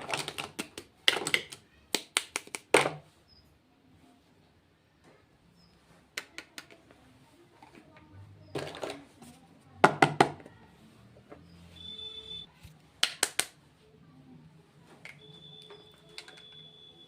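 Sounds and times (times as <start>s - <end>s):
plastic packaging clicks and taps: 0.0s - 3.0s.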